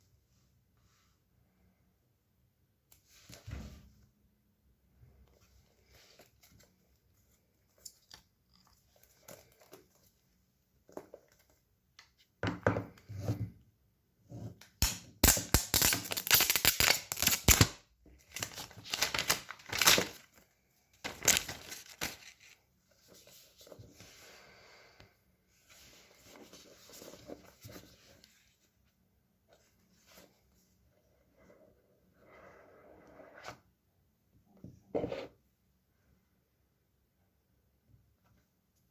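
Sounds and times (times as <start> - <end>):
plastic wrapping tearing: 15.2 - 20.3
wrapping rustling and crinkling: 15.7 - 24.0.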